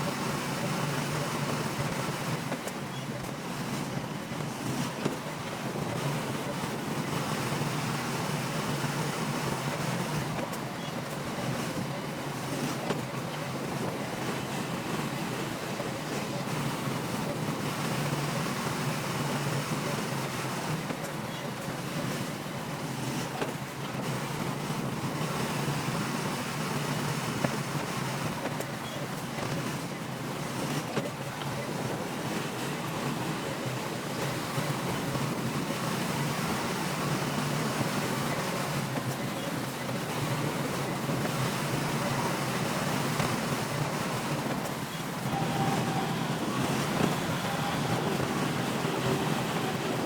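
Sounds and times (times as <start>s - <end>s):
diesel engine running: 36.6s - 50.0s.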